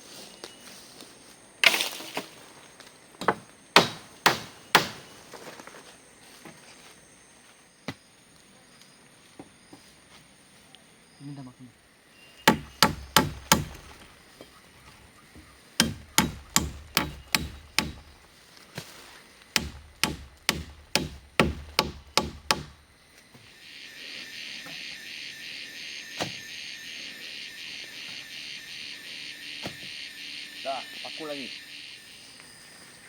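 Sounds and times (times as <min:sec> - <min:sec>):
chorus of crickets or cicadas: 0:00.0 - 0:33.0
hammer driving nails into wood: 0:12.5 - 0:13.9, 0:15.8 - 0:18.1, 0:19.6 - 0:22.8.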